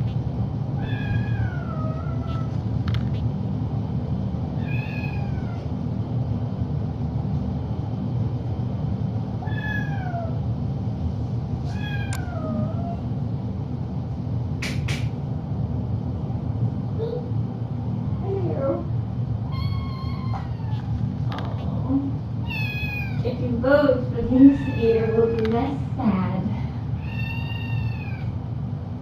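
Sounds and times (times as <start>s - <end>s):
low hum: 0.0s - 29.0s
kitten meowing: 0.8s - 2.5s, 4.6s - 5.6s, 19.5s - 21.0s, 22.4s - 23.2s, 24.4s - 25.1s, 27.0s - 28.3s
sharp clicks: 14.6s - 15.1s.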